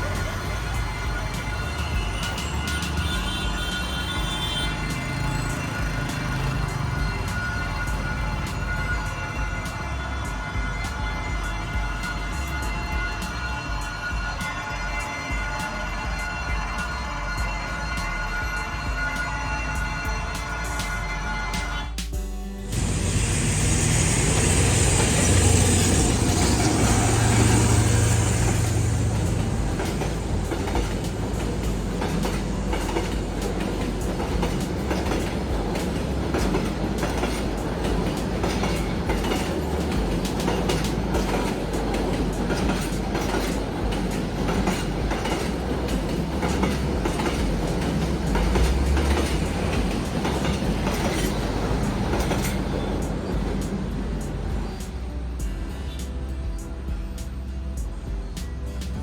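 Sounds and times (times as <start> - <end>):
train cars rumbling: 0.0 - 22.0, 22.6 - 59.0
wheels clicking over rails: 22.7 - 57.4.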